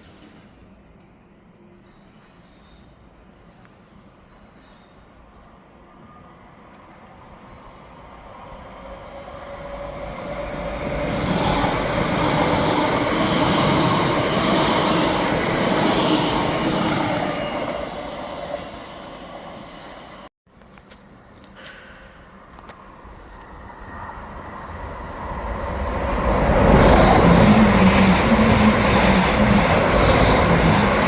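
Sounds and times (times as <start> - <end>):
electric train passing: 4.6 - 20.3, 22.0 - 31.0.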